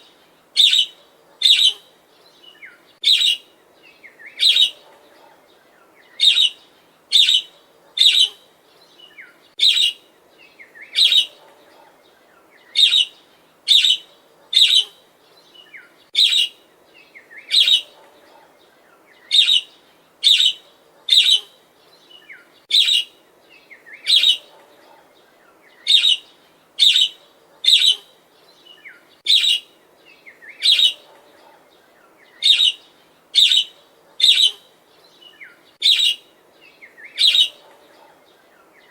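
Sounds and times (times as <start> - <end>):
budgerigar chirping: 0.6 - 1.8, 3.0 - 3.4, 7.2 - 8.4, 13.7 - 14.9, 17.5 - 17.9, 19.3 - 21.5, 24.0 - 24.5, 25.9 - 26.2, 26.8 - 28.0, 29.3 - 29.7, 30.6 - 31.1, 32.4 - 32.8, 33.4 - 34.6, 35.8 - 36.2, 37.1 - 37.6.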